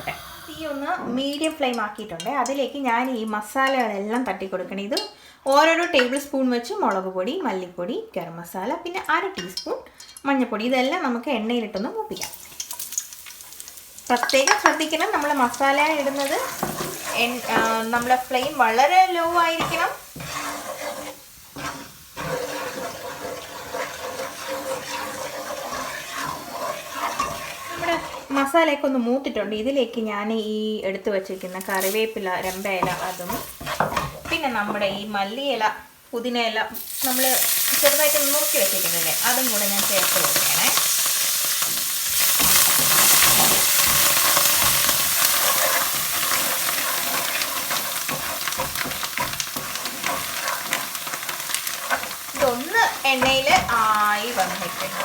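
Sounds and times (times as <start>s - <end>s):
spices sizzling in oil: 0.0s - 5.0s, 8.4s - 55.0s
spoon scraping a pan: 14.4s - 28.6s, 31.4s - 35.4s, 37.0s - 55.0s.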